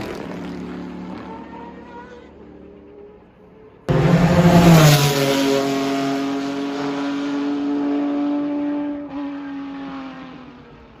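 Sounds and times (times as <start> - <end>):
race car engine at high revs: 3.9 - 11.0.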